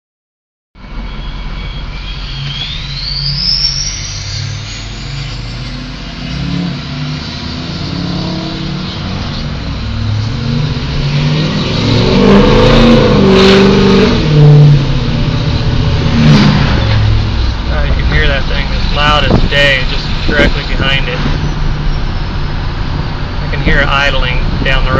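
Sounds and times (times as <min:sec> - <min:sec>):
diesel engine running: 0:00.8 - 0:24.9
turbo whistle climbing in pitch: 0:01.0 - 0:09.4
engine revving: 0:01.6 - 0:24.9.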